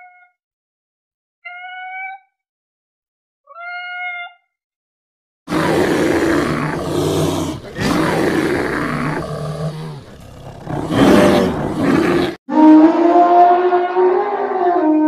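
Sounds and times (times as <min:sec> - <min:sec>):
big cat roaring: 0:05.5 - 0:12.4.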